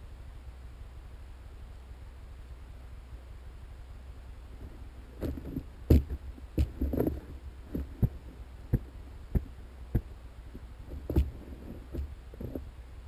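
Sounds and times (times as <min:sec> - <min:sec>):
low steady hum: 0:00.0 - 0:13.0
dull thumps: 0:05.2 - 0:12.7.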